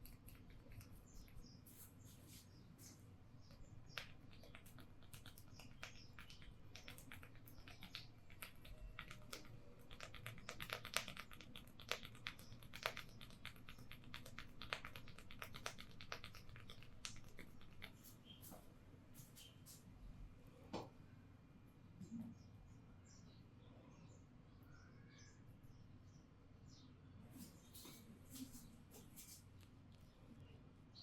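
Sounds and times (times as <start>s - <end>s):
fingers scratching through hair: 3.8s - 18.6s.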